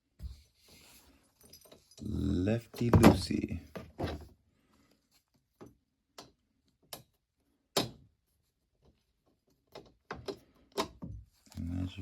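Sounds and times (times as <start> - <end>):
screwdriver clicks and taps on metal: 5.6 - 7.2.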